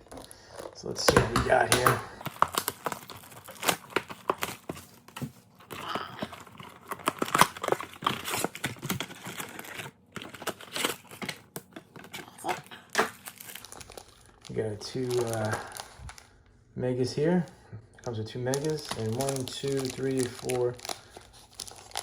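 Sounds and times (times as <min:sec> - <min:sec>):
plastic wrap crinkling: 0:00.0 - 0:16.5, 0:17.1 - 0:22.0.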